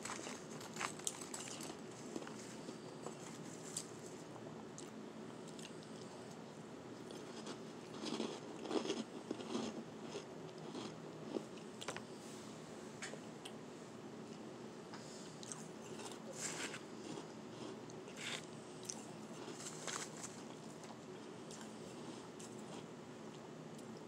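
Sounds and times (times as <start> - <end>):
chewing crunchy shaved ice: 0.0 - 4.1, 7.0 - 12.0, 15.4 - 22.9.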